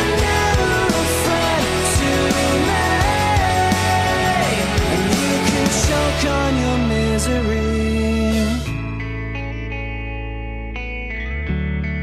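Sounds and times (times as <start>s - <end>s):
band playing: 0.0s - 8.9s.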